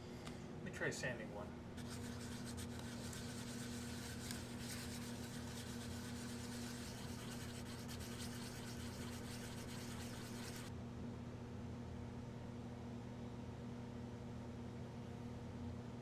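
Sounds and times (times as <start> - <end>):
sandpaper rubbing resin: 1.8 - 10.7.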